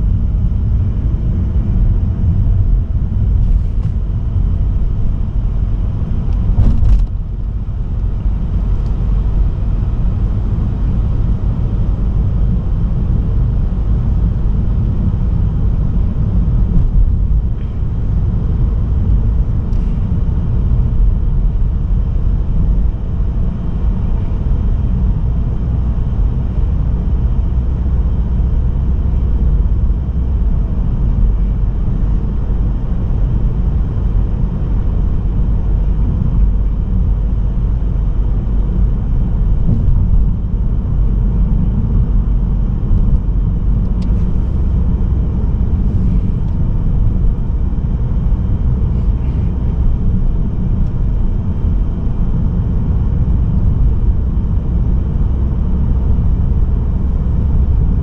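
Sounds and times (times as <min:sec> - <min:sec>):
tyre road noise: 0:00.0 - 0:22.0
car engine rumble: 0:00.0 - 0:58.0.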